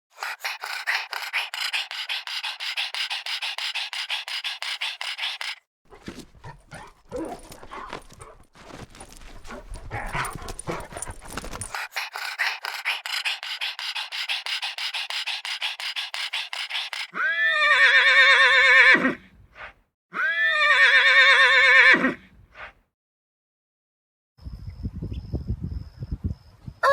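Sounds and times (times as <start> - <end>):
horse whinnying: 17.2 - 19.2, 20.2 - 22.2.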